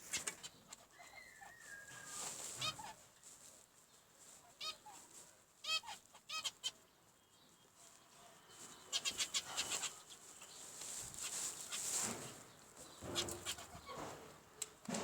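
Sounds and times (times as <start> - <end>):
zebra finches calling: 5.6 - 6.8, 8.7 - 10.6, 12.8 - 14.0.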